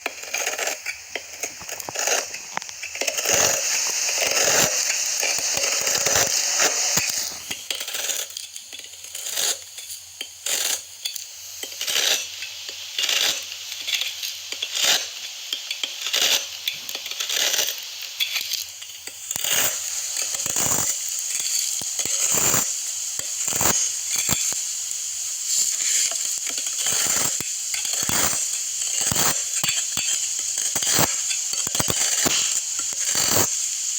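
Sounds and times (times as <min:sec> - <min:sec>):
knife scraping soap: 0:00.1 - 0:03.6, 0:05.7 - 0:19.7
knife cutting soap crackling: 0:11.7 - 0:12.3.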